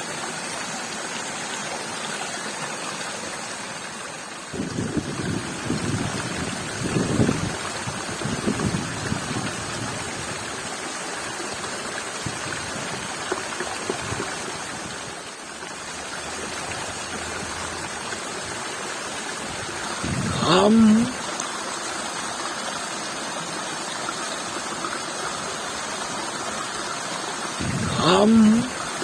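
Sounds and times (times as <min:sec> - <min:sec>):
rushing running water: 0:00.0 - 0:29.0
low rumbling: 0:27.6 - 0:28.2.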